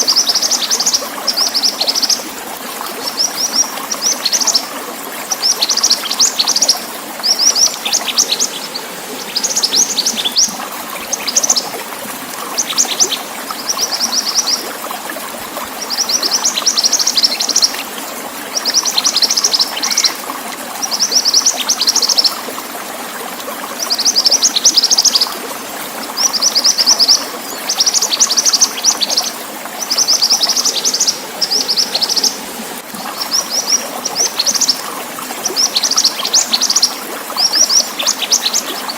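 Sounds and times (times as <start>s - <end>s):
songbird chirping: 0.0s - 14.8s, 18.5s - 20.2s, 26.1s - 38.9s
running water: 0.0s - 38.9s.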